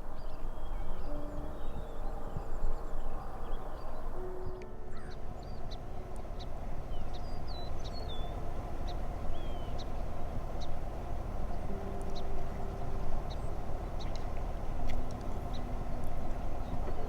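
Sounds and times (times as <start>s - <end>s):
low background noise: 0.0s - 17.0s
small birds chirping: 0.2s - 17.0s.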